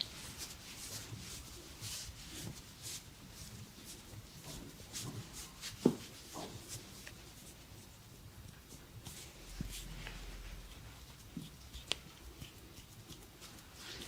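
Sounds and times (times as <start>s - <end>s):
hands rubbing skin and hair: 0.0s - 14.0s.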